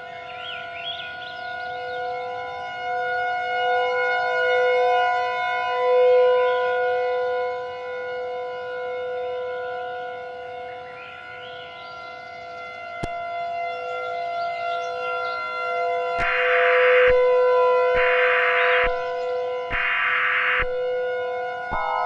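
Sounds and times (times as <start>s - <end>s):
synthesized alert drone: 16.2s - 22.0s
high wavering warble: 21.6s - 22.0s.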